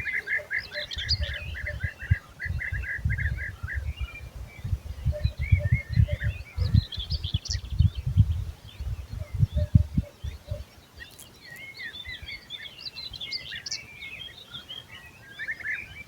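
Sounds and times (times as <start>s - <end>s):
wind buffeting microphone: 0.0s - 10.7s
songbirds chirping and trilling: 0.0s - 16.0s.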